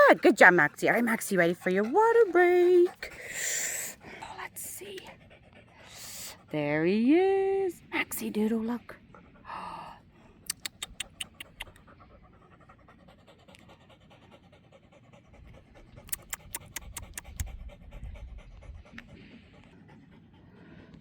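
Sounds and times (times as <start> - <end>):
dog panting: 0.0 - 21.0
sharp clicks: 10.5 - 11.8, 16.1 - 17.5.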